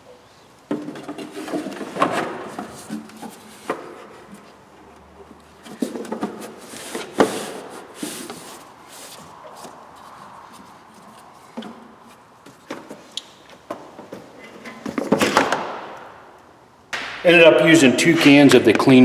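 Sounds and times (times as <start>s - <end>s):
objects clunking and knocking: 0.7s - 16.1s
sharp knock: 16.9s - 17.2s.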